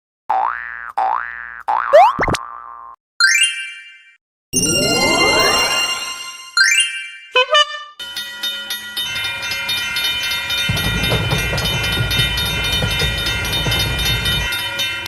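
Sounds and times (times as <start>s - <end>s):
steady high tones: 4.6s - 7.2s
train rumble: 8.1s - 15.0s.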